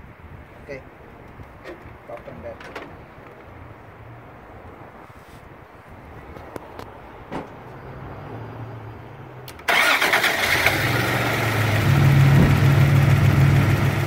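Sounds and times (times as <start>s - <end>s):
car engine cranking and starting: 9.5s - 14.0s.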